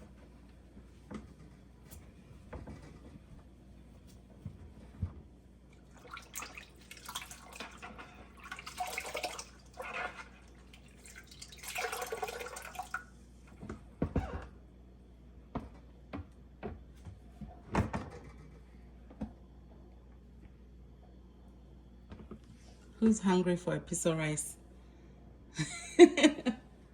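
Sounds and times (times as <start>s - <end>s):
water splashing and swishing: 5.8s - 13.0s.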